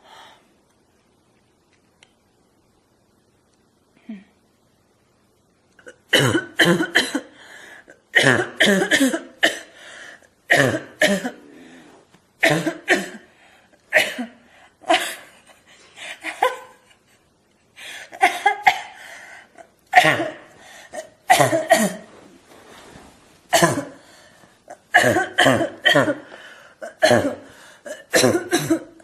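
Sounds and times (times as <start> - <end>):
person coughing harshly: 5.8 - 9.8, 10.5 - 11.5, 12.4 - 13.3, 13.9 - 15.3, 18.1 - 19.0, 19.9 - 22.2, 23.5 - 29.0.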